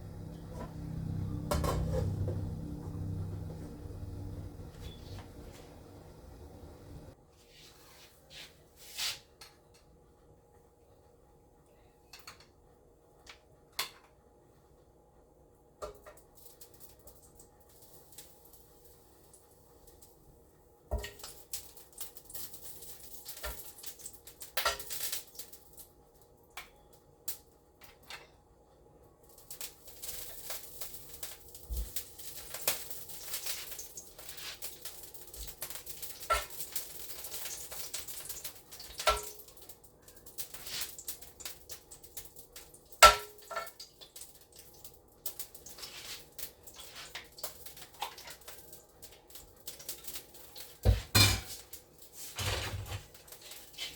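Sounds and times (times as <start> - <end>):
dishes and utensils clinking: 0.1 - 3.4, 50.9 - 51.7.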